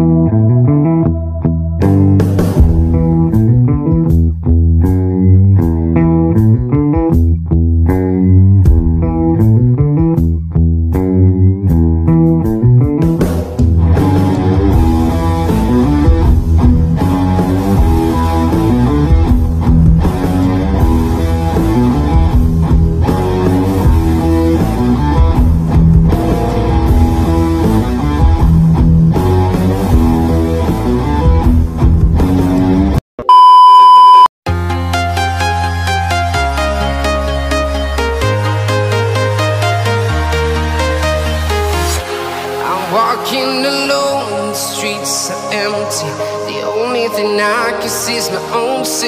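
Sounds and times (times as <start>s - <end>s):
guitar rock music: 0.0s - 33.0s, 34.5s - 49.0s
high beep: 33.2s - 34.3s.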